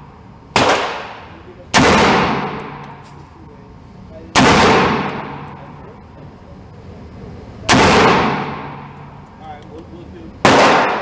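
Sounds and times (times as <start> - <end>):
rifle shot echoing: 0.6 - 1.2, 1.8 - 3.0, 4.4 - 5.5, 7.7 - 9.0, 10.4 - 11.0.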